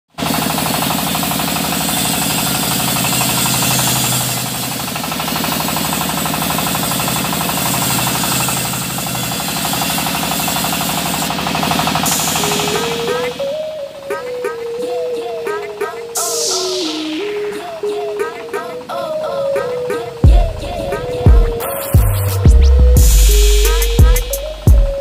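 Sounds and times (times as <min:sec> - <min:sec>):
fast knocking pulses: 0:00.2 - 0:13.4
engine drone: 0:00.2 - 0:13.7, 0:20.0 - 0:25.0
hiss of machine noise: 0:00.2 - 0:22.4.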